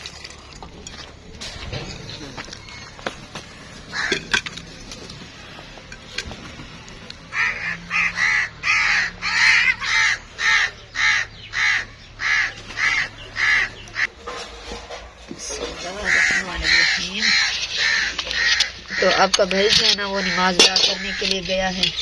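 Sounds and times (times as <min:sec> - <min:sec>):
crow cawing: 0:02.2 - 0:04.5, 0:07.3 - 0:14.1, 0:16.0 - 0:22.0.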